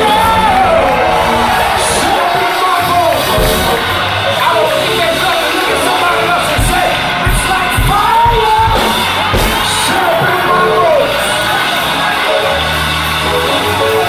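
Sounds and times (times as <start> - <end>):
drum hits: 0.0 - 4.5, 6.5 - 11.0
gospel choir with band: 0.0 - 14.0.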